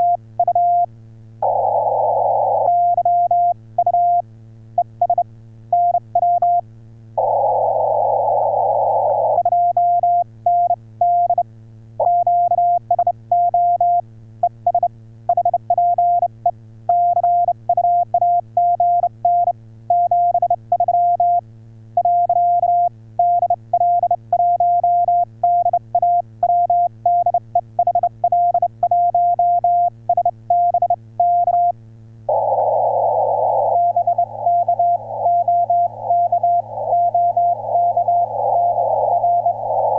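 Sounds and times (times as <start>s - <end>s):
faint low hum: 0.0s - 39.9s
radio receiver hiss: 1.4s - 2.9s, 7.2s - 9.4s, 32.3s - 39.9s
morse code beeps: 32.3s - 39.9s.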